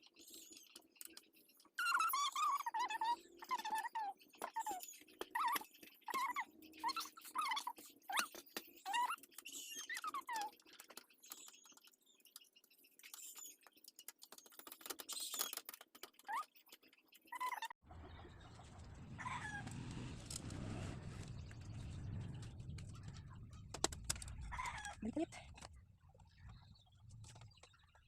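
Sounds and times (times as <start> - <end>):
bird-like chirps: 0.0 - 28.0
steady low rumble: 17.9 - 28.0.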